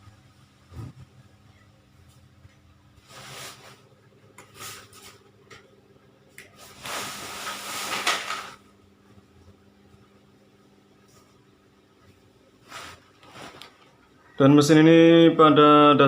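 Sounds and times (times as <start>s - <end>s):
rustling scraping handling noise: 3.0s - 5.3s, 6.6s - 8.6s, 12.6s - 14.0s.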